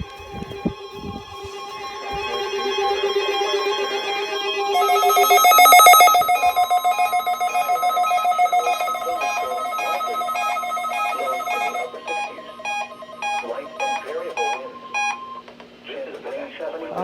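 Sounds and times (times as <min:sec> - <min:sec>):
electronic ringing trill: 0:04.7 - 0:15.4
pulsing alarm beep over held tone: 0:04.7 - 0:15.4.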